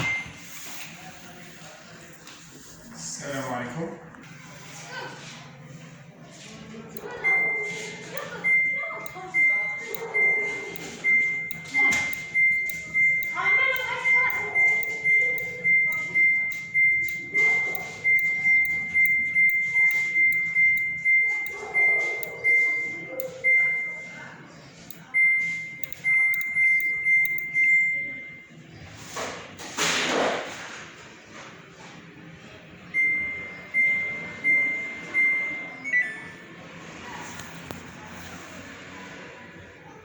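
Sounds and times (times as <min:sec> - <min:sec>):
washing machine panel beeps: 0:00.0 - 0:00.5, 0:07.0 - 0:28.6, 0:32.9 - 0:36.6.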